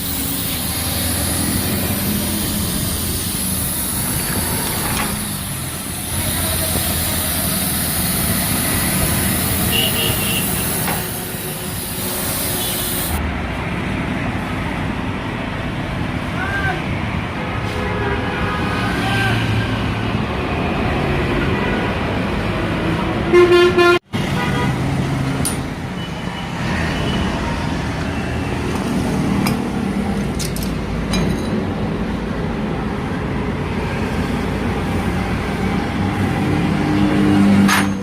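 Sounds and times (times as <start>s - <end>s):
road traffic noise: 0.0s - 38.0s
vehicle horn: 9.6s - 10.9s, 12.5s - 13.1s, 23.3s - 24.8s.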